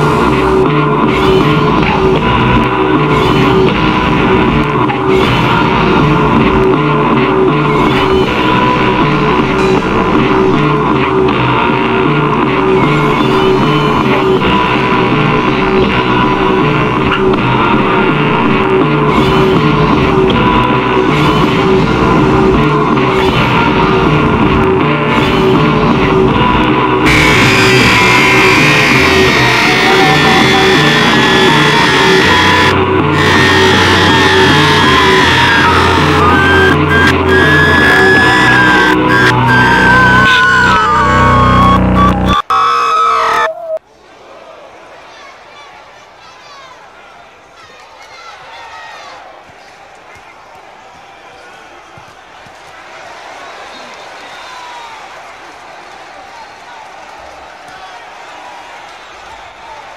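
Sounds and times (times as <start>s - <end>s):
loud rock music: 0.0s - 42.5s.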